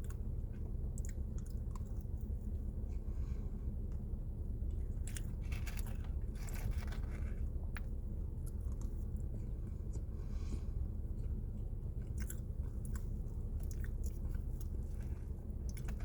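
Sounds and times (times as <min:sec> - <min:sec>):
low background hum: 0:00.0 - 0:16.0
chewing mouth sounds: 0:12.0 - 0:16.0.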